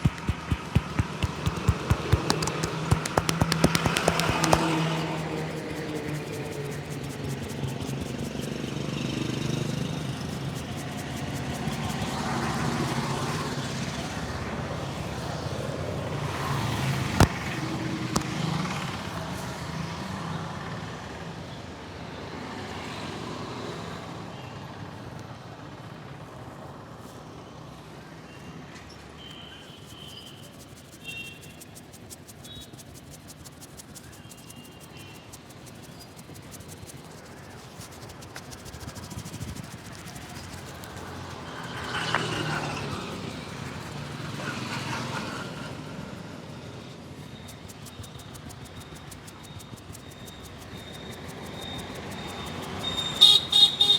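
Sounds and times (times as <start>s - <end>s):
sharp snaps: 0.0s - 13.8s, 30.1s - 44.9s, 47.3s - 53.9s
street traffic rumble: 0.0s - 21.5s, 29.6s - 53.9s.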